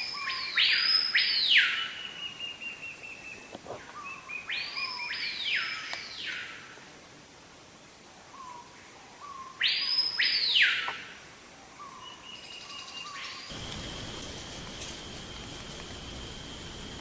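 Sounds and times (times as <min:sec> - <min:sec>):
bird calls sweeping up: 0:00.0 - 0:06.6, 0:11.8 - 0:13.5.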